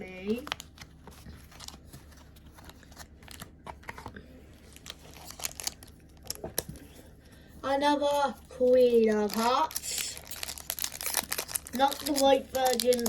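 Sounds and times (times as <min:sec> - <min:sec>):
foil wrapper crinkling and tearing: 0:00.1 - 0:03.5, 0:04.6 - 0:06.9, 0:08.6 - 0:13.0.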